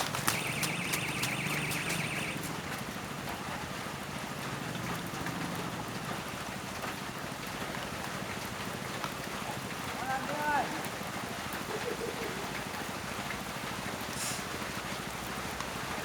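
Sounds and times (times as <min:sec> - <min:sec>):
scattered clicks: 0:00.0 - 0:02.6
electronic bite alarm warbling: 0:00.2 - 0:02.5.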